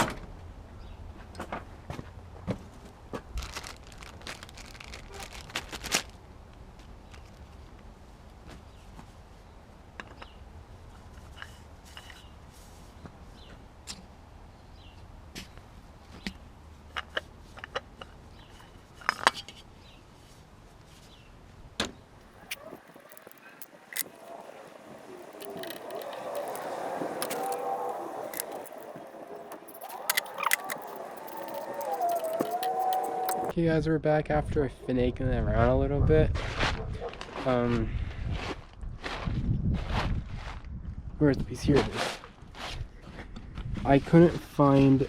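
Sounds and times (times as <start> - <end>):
tools and parts clicking: 22.2 - 33.5.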